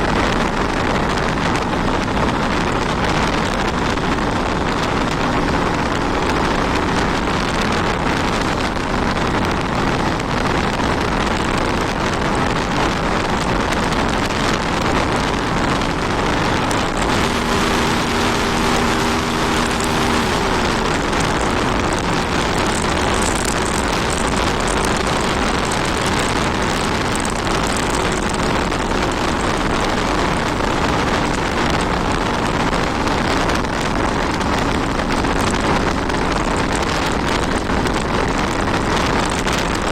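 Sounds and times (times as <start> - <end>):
motorcycle engine hum: 0.0 - 39.9
wind rushing over microphone: 0.0 - 39.9
steady tone: 16.0 - 27.2.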